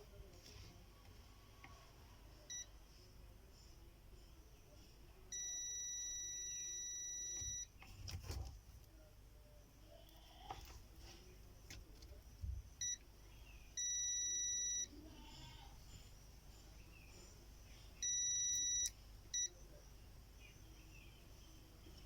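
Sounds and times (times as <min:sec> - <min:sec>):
multimeter continuity buzzer beeping: 0:02.5 - 0:02.8, 0:05.3 - 0:07.8, 0:12.7 - 0:13.0, 0:13.7 - 0:15.1, 0:18.0 - 0:19.7.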